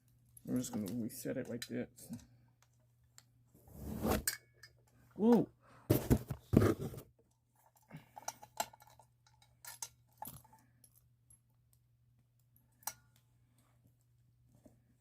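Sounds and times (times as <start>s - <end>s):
small clicks and rattles: 7.3s - 11.8s.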